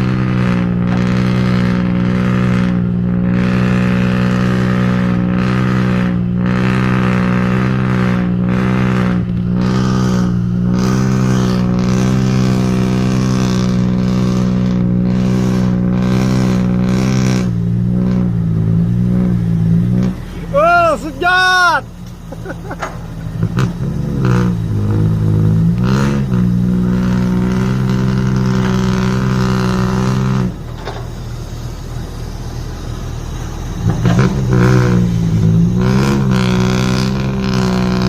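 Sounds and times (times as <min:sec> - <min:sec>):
diesel engine droning: 0:00.0 - 0:38.0.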